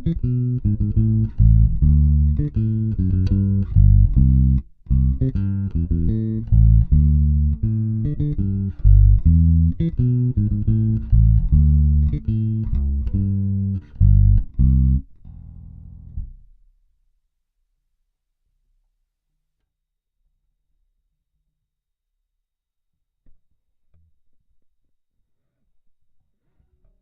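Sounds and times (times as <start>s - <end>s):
electric bass plucked notes: 0.0s - 16.5s.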